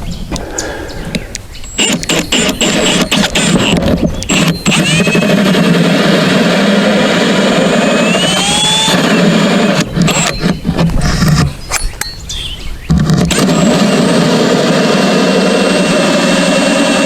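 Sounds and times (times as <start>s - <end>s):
power drill boring through wood: 1.7s - 11.5s, 12.9s - 17.0s.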